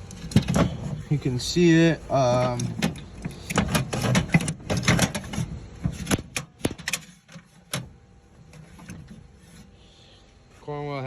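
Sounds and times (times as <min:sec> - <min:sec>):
tools clattering in metal drawer: 0:02.2 - 0:07.6.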